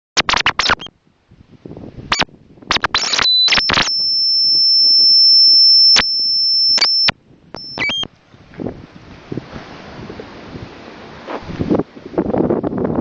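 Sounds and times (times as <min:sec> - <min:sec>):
short high beeps: 0:02.1 - 0:08.1
steady high-pitched tone: 0:02.1 - 0:08.1.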